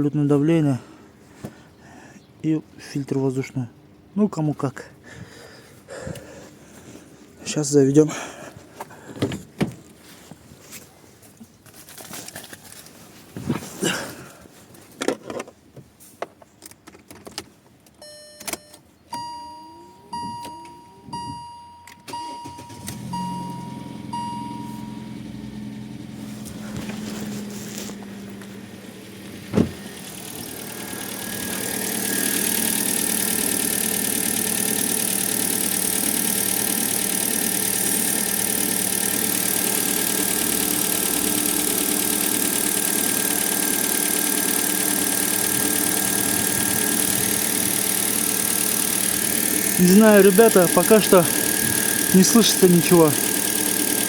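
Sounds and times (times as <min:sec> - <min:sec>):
short electronic beeps: 0:18.0 - 0:25.2
car engine starting and idling: 0:18.1 - 0:54.0
engine intake hiss: 0:24.7 - 0:54.0.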